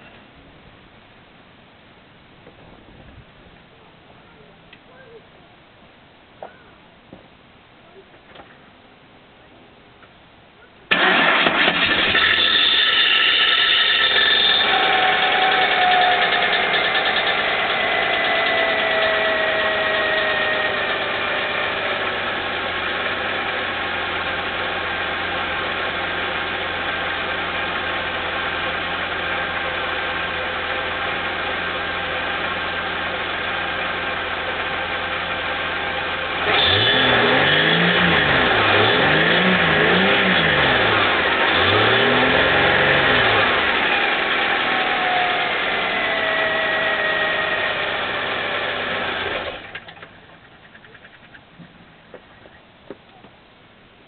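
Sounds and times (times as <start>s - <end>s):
engine revving: 10.9s - 23.0s, 36.3s - 49.8s
car engine starting and idling: 10.9s - 53.4s.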